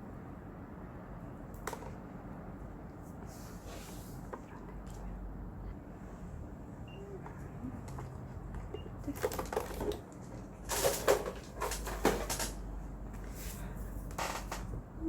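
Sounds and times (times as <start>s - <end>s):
rustling scraping handling noise: 3.1s - 4.4s, 9.1s - 14.7s.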